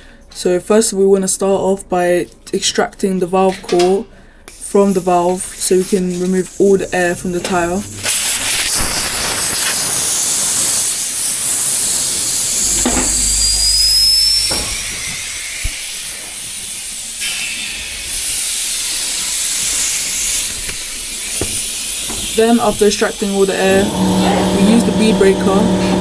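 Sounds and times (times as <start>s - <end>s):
air hissing out of tyre valve: 4.5s - 22.5s
thin whistle: 11.5s - 16.0s.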